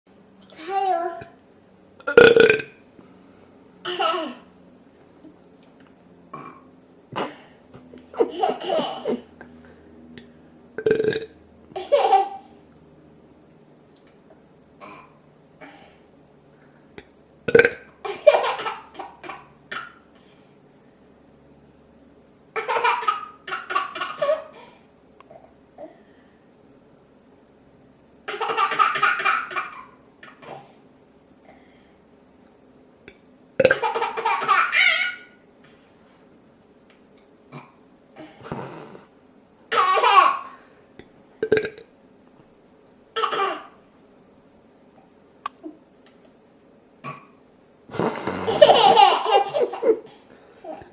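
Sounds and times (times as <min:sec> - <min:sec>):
person burping loudly: 0:02.0 - 0:02.8, 0:10.8 - 0:11.4, 0:14.8 - 0:15.2, 0:17.5 - 0:17.9, 0:33.6 - 0:33.8, 0:41.4 - 0:41.9, 0:47.9 - 0:48.7.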